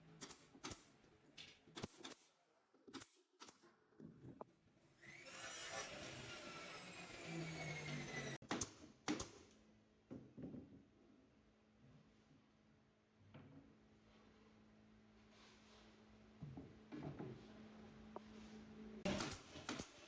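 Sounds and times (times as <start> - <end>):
power tool running: 5.0 - 8.4.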